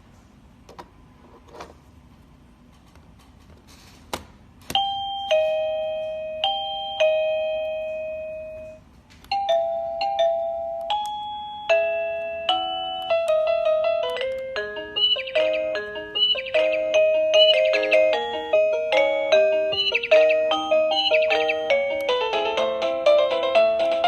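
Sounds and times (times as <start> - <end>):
doorbell chime melody: 4.8 - 24.0.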